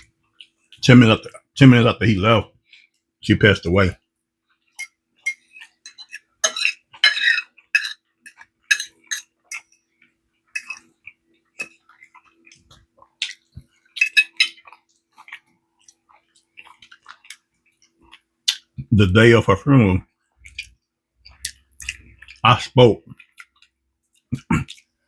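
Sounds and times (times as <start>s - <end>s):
cutlery clinking on plates: 4.8s - 9.8s, 10.5s - 10.9s, 14.0s - 14.7s.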